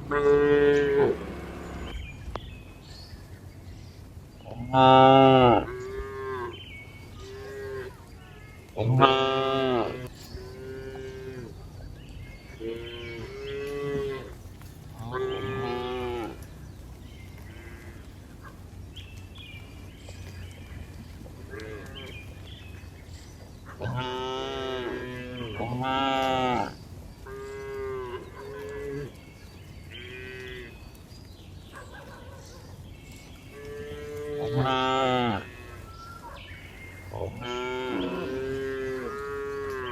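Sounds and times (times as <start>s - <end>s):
cattle mooing: 0.0s - 2.0s, 8.9s - 11.6s, 12.6s - 16.5s, 23.8s - 29.2s, 33.5s - 36.0s, 37.1s - 39.9s.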